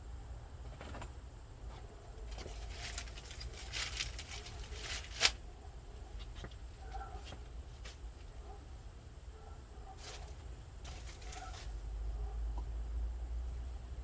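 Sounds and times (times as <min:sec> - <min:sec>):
rustling and scraping: 0:00.7 - 0:05.4, 0:06.0 - 0:08.6, 0:09.8 - 0:11.9.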